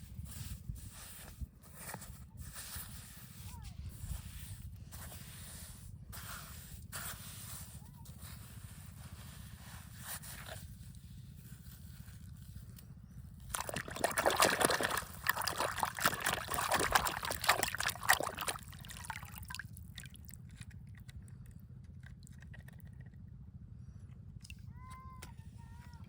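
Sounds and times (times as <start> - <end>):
water sloshing and splashing: 13.4 - 21.1
faint water drips: 13.5 - 20.4.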